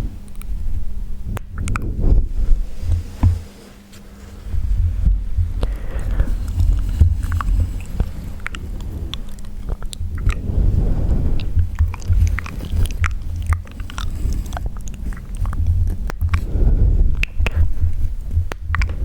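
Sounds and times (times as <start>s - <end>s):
low rumble: 0.0s - 19.0s
tongue and lip clicks: 1.3s - 2.0s, 5.6s - 10.5s, 11.4s - 19.0s
soft breath: 1.8s - 19.0s.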